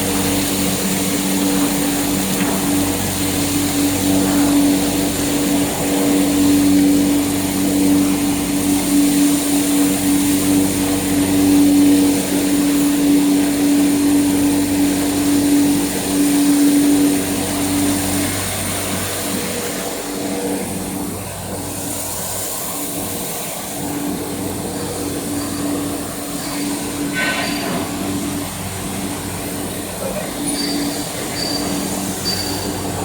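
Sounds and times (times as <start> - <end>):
constant rushing noise: 0.0 - 33.0
motor hum: 0.0 - 33.0.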